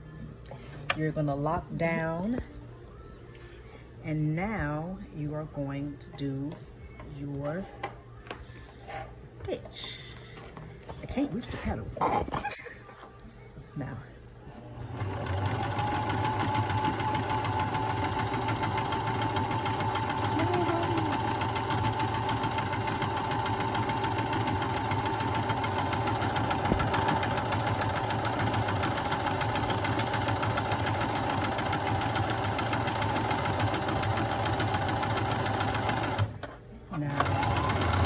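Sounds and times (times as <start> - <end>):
sewing machine stitching: 14.8 - 36.5, 37.1 - 38.0.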